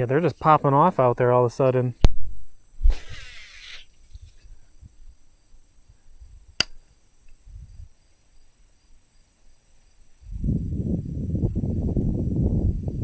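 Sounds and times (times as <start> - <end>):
high-pitched insect trill: 2.5 - 13.0
sharp click: 6.6 - 7.4.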